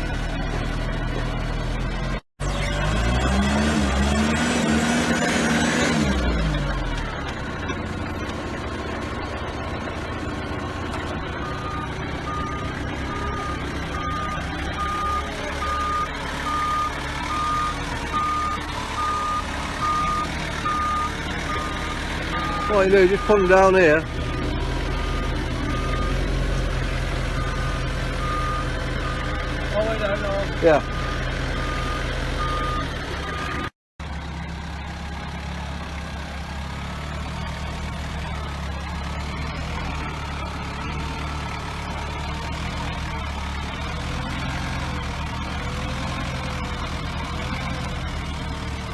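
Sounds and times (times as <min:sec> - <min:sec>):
forklift engine running: 0:00.0 - 0:48.9
forklift reversing alarm beeping: 0:00.1 - 0:33.7.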